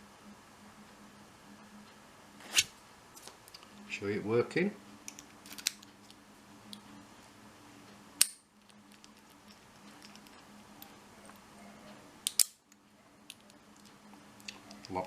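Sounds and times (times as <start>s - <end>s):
padlock shackle springing open: 12.2s - 12.6s
padlock snapping shut: 12.2s - 12.6s.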